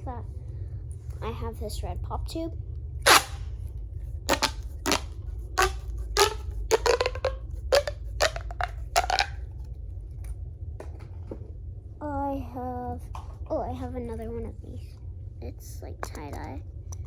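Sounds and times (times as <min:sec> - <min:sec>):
pop tube toy popping: 0:03.0 - 0:03.5, 0:04.3 - 0:09.4.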